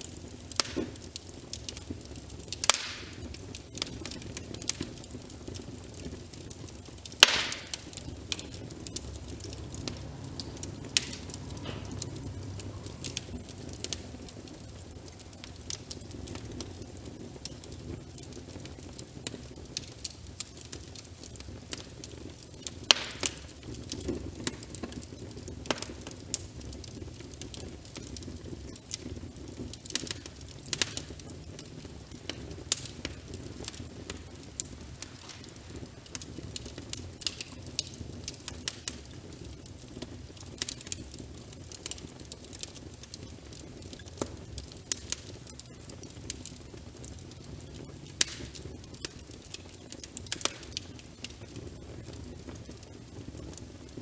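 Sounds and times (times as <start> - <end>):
wood fire crackling and popping: 0.0 - 54.0
rain rushing: 7.2 - 17.4.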